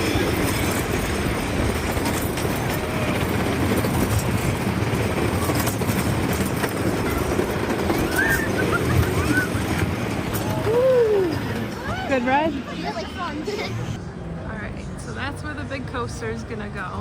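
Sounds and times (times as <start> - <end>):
roller coaster wheels rattling on rails: 0.0 - 14.0.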